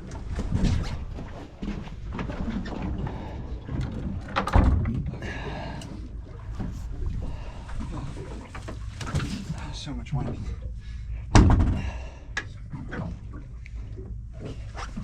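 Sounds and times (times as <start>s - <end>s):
wind rumbling on microphone: 0.0s - 10.6s
loud thump: 11.4s - 11.8s.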